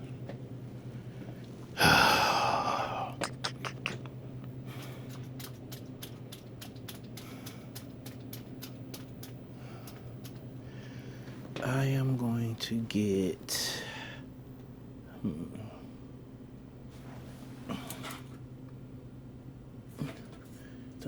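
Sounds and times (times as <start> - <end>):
low electrical hum: 0.0 - 21.0
light irregular clicks: 3.2 - 10.5.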